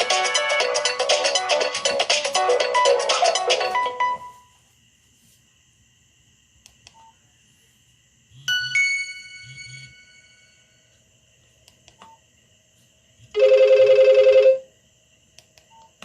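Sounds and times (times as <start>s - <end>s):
polyphonic phone ringtone: 2.4s - 4.4s, 13.4s - 14.7s.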